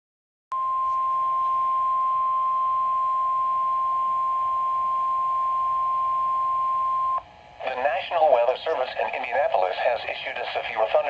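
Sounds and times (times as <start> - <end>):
steady alarm beep: 0.6 - 7.2
faint radio hiss: 0.7 - 2.0, 4.4 - 11.0.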